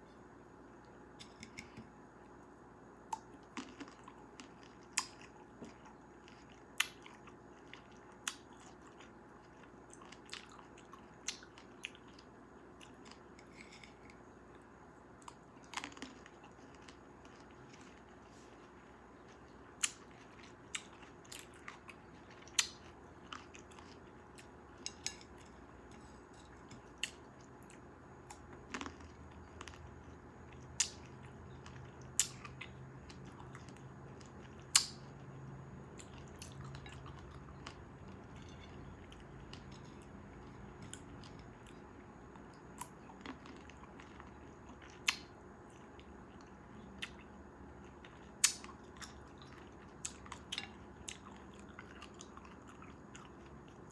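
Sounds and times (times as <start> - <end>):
chewing cherries wet clicks: 19.8 - 25.6, 42.8 - 47.3, 48.0 - 53.8.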